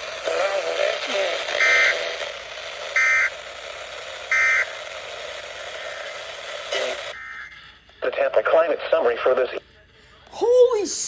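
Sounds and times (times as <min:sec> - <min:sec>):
radio hiss: 0:00.1 - 0:03.3, 0:04.3 - 0:07.2
buzzy data burst screeches: 0:00.3 - 0:03.4, 0:04.2 - 0:07.5.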